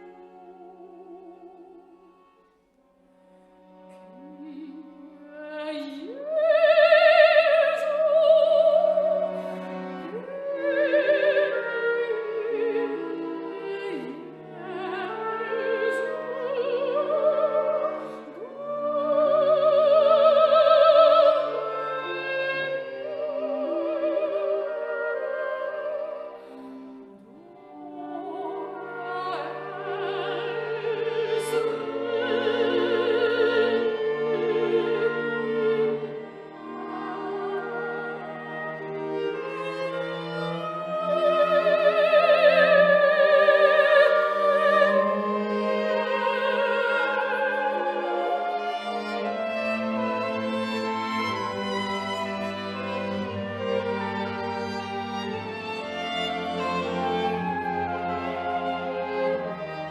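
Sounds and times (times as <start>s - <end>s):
operatic singing: 27.2s - 59.9s.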